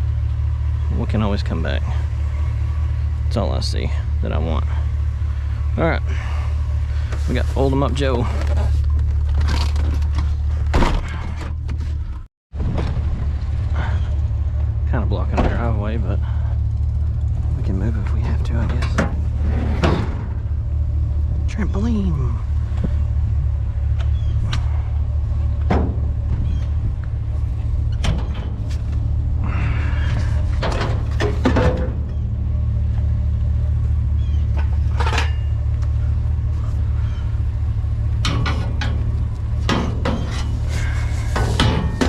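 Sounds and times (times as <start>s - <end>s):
vehicle engine rumbling: 0.0s - 42.0s
knocks and clanks: 18.0s - 20.7s, 23.9s - 36.0s, 38.0s - 42.0s
rattling: 22.4s - 42.0s.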